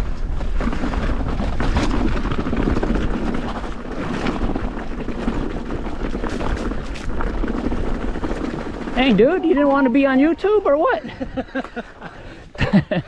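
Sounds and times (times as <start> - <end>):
bike tyres on loose dirt: 0.0 - 9.1
bike clicks and knocks: 5.2 - 8.8.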